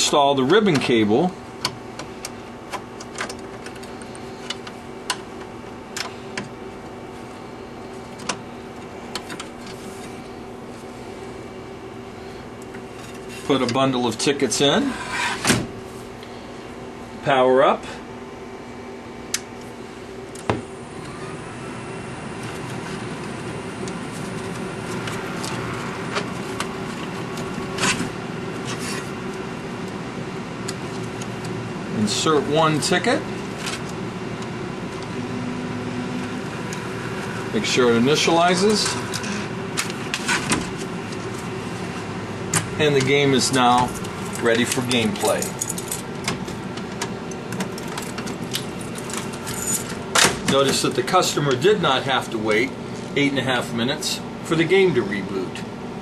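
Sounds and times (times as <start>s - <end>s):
steady hum: 0.0s - 56.0s
slot machine hum: 20.8s - 40.3s.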